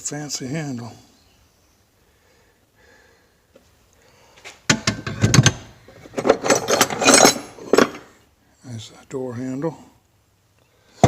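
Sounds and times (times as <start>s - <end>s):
metal hand tools clattering: 6.2s - 8.1s.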